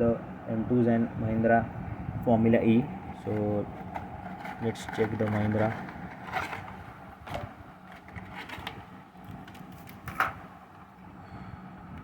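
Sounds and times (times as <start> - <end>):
low steady hum: 0.0 - 12.0
model car being handled: 3.2 - 10.4.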